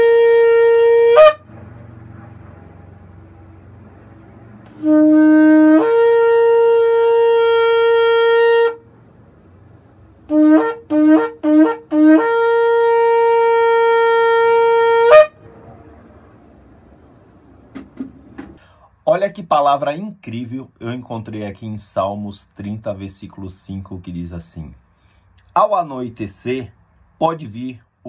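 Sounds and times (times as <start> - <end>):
shofar blasts: 0.0 - 3.2, 4.6 - 8.9, 10.3 - 15.7.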